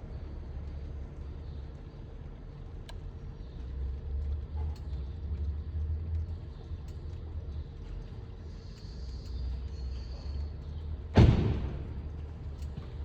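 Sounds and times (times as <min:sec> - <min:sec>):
faint irregular clicks: 0:02.7 - 0:10.8.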